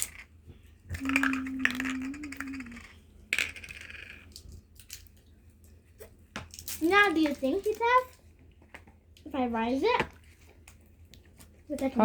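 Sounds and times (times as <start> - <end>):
person humming: 0.9 - 3.0
small hard objects clinking: 0.9 - 5.1, 6.4 - 8.2.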